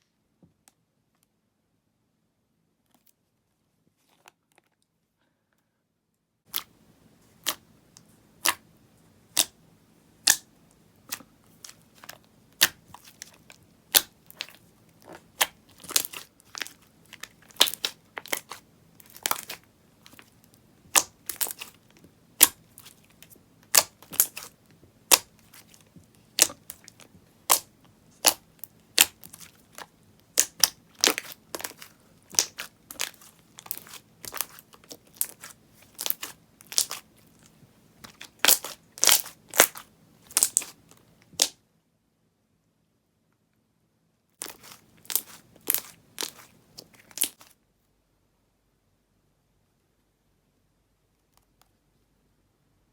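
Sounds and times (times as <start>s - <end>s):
slime popping and crackling: 9.3s - 9.6s, 10.2s - 10.4s, 11.1s - 41.6s, 44.4s - 47.5s.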